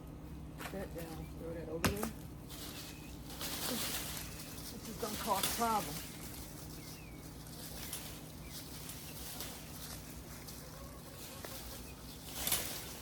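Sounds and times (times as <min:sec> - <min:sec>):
outdoor background hum: 0:00.0 - 0:13.0.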